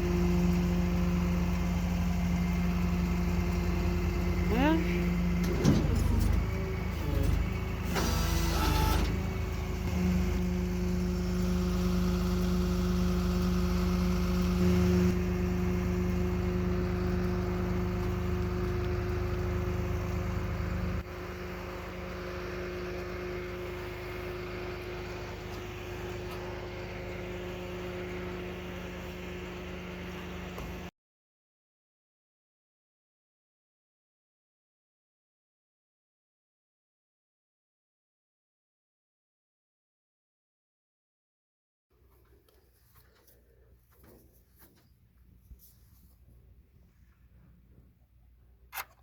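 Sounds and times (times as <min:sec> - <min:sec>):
tow truck engine running: 0:00.0 - 0:30.9.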